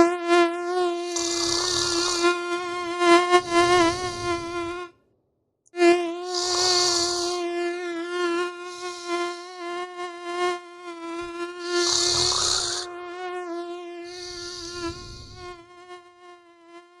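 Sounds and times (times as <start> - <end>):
mosquito whine: 0.0 - 4.9, 5.8 - 17.0
person snoring: 1.0 - 2.4, 3.3 - 4.9, 6.2 - 7.4, 8.6 - 9.6, 11.6 - 12.9, 14.0 - 15.6.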